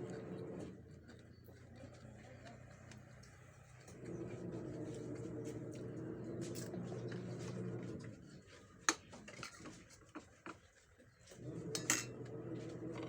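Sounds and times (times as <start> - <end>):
utensils clicking on dishes: 11.6 - 12.3.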